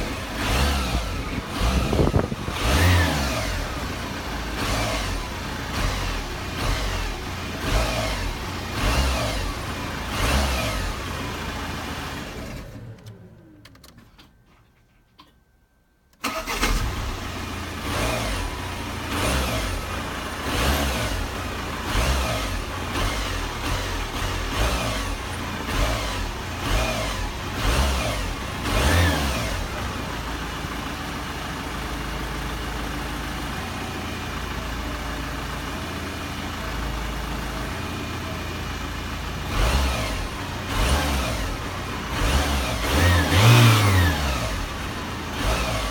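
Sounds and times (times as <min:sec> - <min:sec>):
diesel engine revving and idling: 0:00.0 - 0:13.6, 0:16.2 - 0:45.9
engine winding down: 0:00.0 - 0:13.8, 0:16.2 - 0:31.2, 0:39.3 - 0:45.9.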